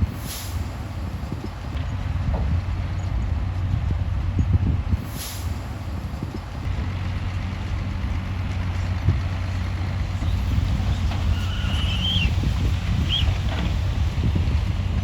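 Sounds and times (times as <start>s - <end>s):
bulldozer diesel engine running: 0.0s - 15.0s
steel tracks clanking on rock: 8.7s - 15.0s.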